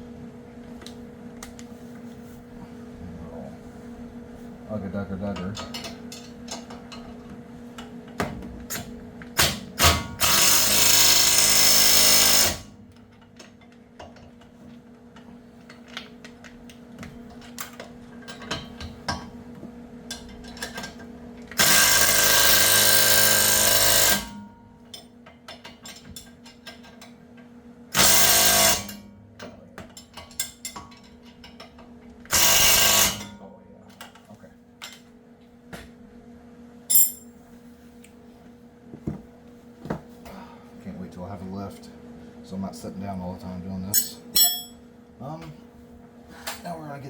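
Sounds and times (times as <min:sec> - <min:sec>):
power wrench running bolts: 0:09.8 - 0:12.7, 0:21.6 - 0:24.3, 0:28.0 - 0:28.9, 0:32.3 - 0:33.2
hand tools clinking: 0:36.9 - 0:37.3, 0:44.0 - 0:44.8.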